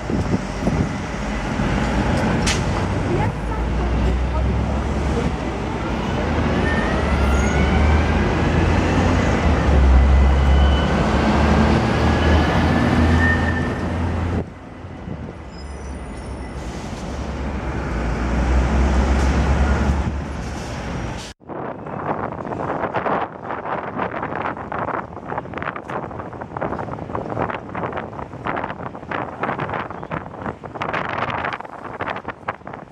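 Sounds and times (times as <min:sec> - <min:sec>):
tram running past: 0:00.0 - 0:21.3.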